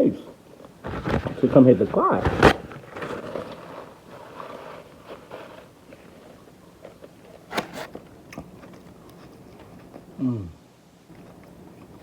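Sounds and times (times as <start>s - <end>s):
chewing and crunching: 2.6s - 10.2s, 11.1s - 12.0s
person humming: 10.2s - 10.6s.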